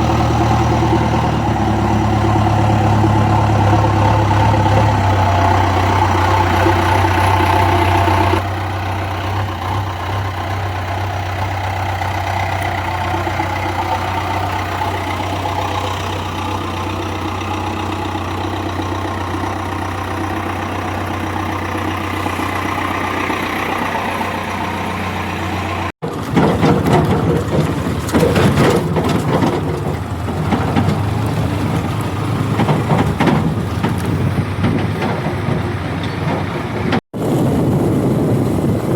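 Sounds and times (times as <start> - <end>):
diesel engine running: 0.0 - 38.9
rough engine rattling and knocking: 0.0 - 38.9.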